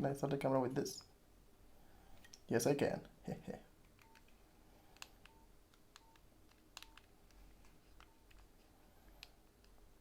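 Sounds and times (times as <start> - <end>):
phone keypad clicks: 3.9 - 4.4, 5.0 - 7.1.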